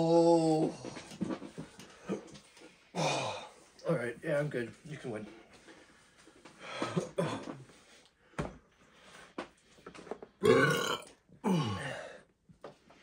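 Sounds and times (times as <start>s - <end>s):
loud burps: 10.4s - 12.0s.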